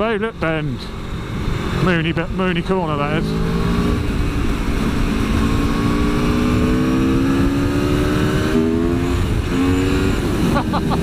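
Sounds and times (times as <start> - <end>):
wind buffeting microphone: 0.0 - 10.8
motorcycle engine accelerating: 0.0 - 11.0.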